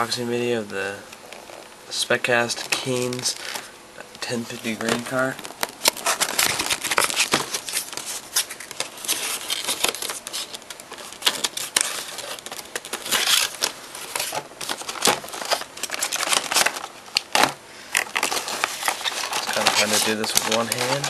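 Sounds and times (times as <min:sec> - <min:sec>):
packaging crinkling and tearing: 0:04.5 - 0:21.0.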